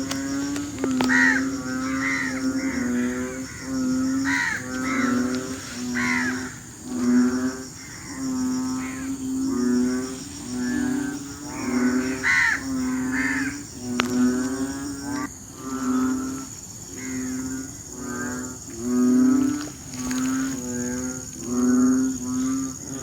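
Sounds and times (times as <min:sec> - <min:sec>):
frogs croaking: 0:00.0 - 0:23.0.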